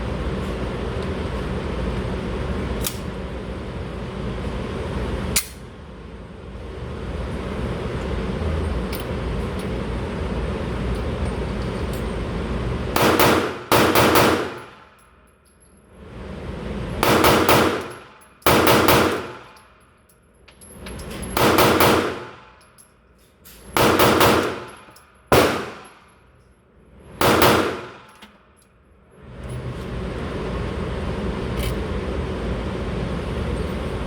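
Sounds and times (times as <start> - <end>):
pistol shots with ringing tail: 13.0 - 14.9, 17.0 - 19.5, 21.4 - 22.5, 23.8 - 26.1, 27.2 - 28.1.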